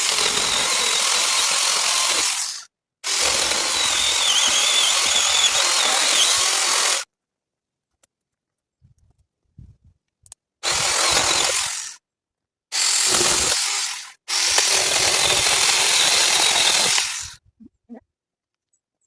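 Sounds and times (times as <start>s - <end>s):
power cutting tool running: 0.0s - 7.0s, 10.6s - 11.9s, 12.8s - 17.3s.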